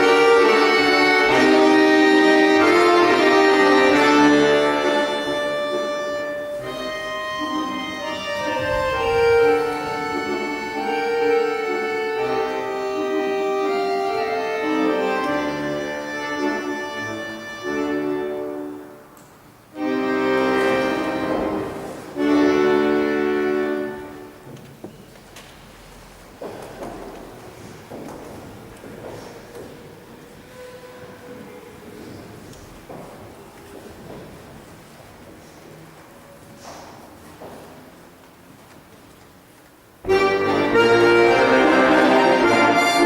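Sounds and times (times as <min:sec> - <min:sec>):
accordion playing: 0:00.0 - 0:24.5, 0:40.0 - 0:43.0.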